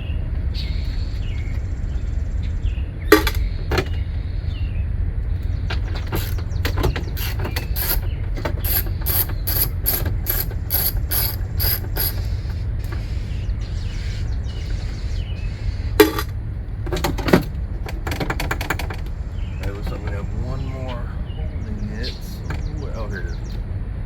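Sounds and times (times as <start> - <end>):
steady low hum: 0.0 - 24.0
sharp knocks: 3.1 - 4.0
ratchet wrench clicking: 6.0 - 13.0.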